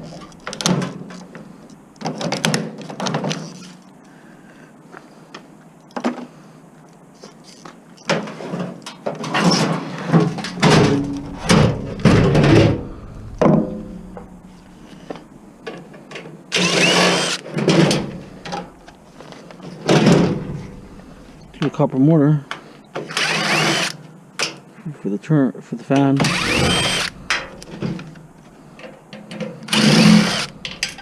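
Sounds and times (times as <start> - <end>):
metal parts clanking: 10.4 - 15.8, 17.5 - 21.6, 26.2 - 31.0
metal scraping: 10.4 - 15.8, 16.6 - 22.0, 26.2 - 28.9, 29.7 - 31.0.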